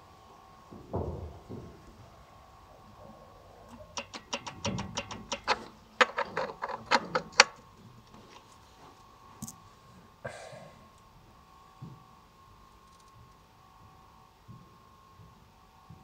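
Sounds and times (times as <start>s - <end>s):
faint steady hum: 0.0s - 16.0s
metallic clicking and knocking: 3.7s - 7.6s.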